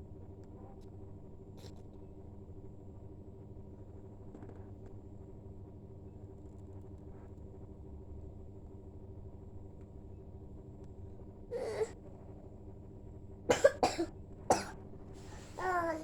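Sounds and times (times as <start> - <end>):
faint steady hum: 0.0 - 16.0
child coughing: 11.6 - 12.0, 13.5 - 14.8, 15.6 - 16.0
child's voice: 15.6 - 16.0.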